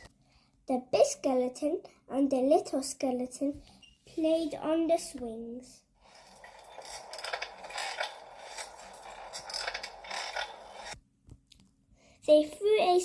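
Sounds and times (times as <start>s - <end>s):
playground swing creaking: 6.0s - 11.0s.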